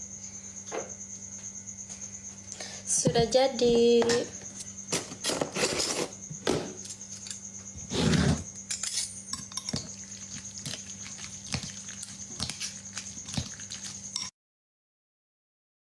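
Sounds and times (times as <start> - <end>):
metal utensils clinking on dishes: 4.9 - 6.1, 8.7 - 10.9.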